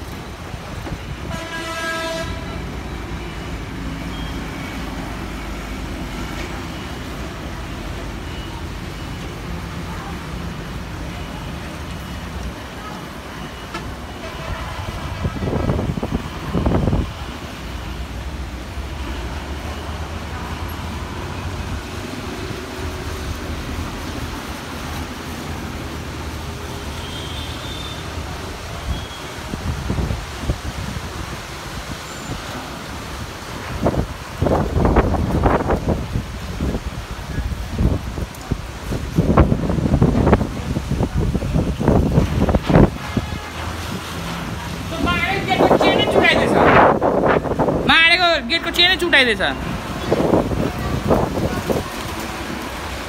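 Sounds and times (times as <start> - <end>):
vehicle horn: 1.2 - 2.7, 42.9 - 43.8
storm wind gusting: 14.0 - 17.7, 28.2 - 48.5, 49.6 - 53.0
wind buffeting microphone: 14.4 - 17.4, 28.5 - 32.4, 33.2 - 47.9, 49.7 - 53.0.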